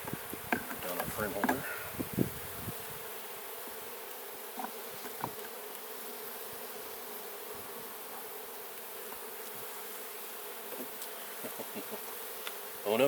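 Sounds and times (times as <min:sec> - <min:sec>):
honey bees buzzing: 0:00.0 - 0:13.0
knocks on wooden frames: 0:00.5 - 0:01.6, 0:04.6 - 0:05.5.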